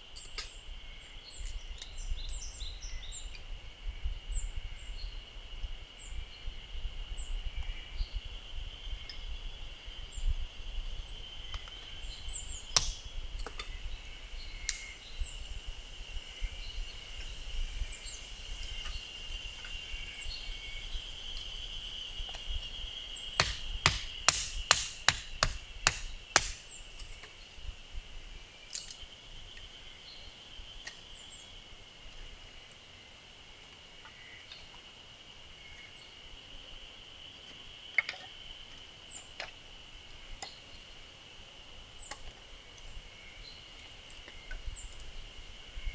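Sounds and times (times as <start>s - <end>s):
tool striking wood: 12.8s - 13.0s, 23.4s - 26.8s
birds chirping: 16.6s - 27.6s.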